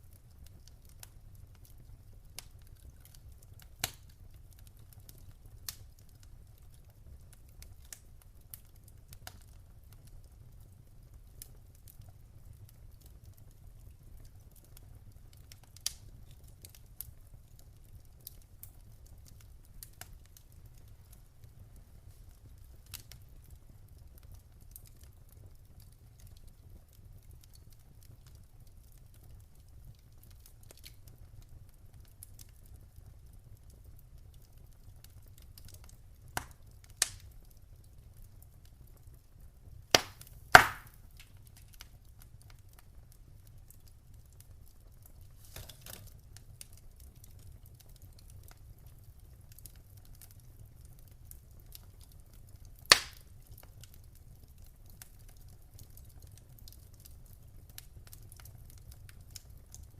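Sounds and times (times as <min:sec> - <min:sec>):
wood fire crackling: 0:00.0 - 0:59.9
sharp fire pops: 0:35.6 - 0:37.3, 0:39.9 - 0:41.8, 0:52.8 - 0:53.3.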